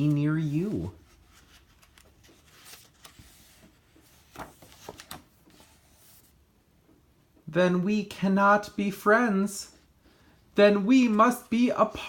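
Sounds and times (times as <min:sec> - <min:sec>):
book pages rustling: 0:00.0 - 0:06.4.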